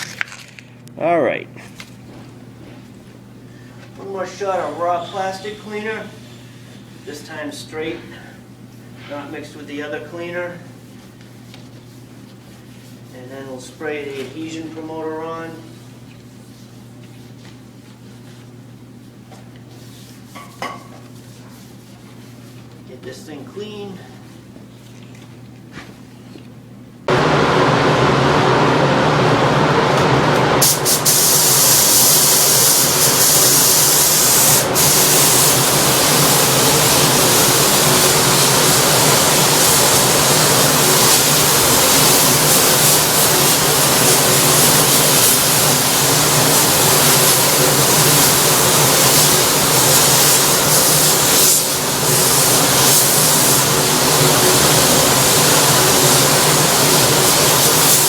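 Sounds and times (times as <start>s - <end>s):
spray gun hissing: 30.6s - 58.0s.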